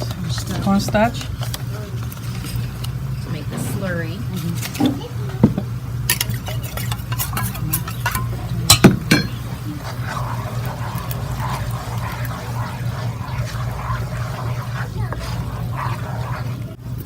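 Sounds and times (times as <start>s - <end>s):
steady low hum: 0.0s - 17.0s
utensil clinking against dish: 4.4s - 16.7s.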